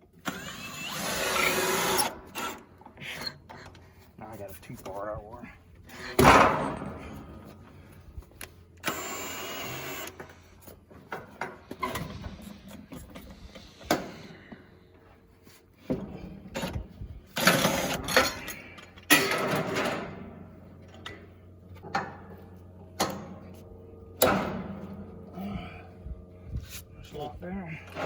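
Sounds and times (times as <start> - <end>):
cordless drill running: 0.2 - 2.8, 8.8 - 10.2
knocks and clanks of metal hardware: 6.0 - 7.6, 15.8 - 25.7.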